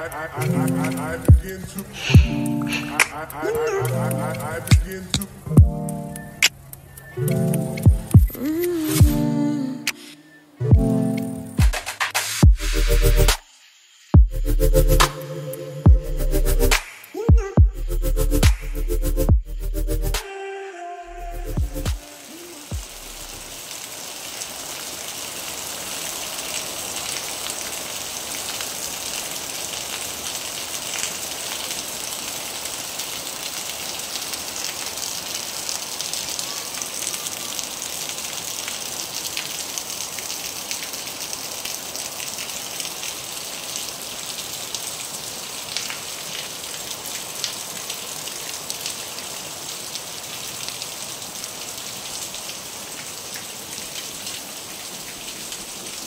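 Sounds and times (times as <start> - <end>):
heavy rain falling: 0.0 - 9.3, 21.2 - 56.0.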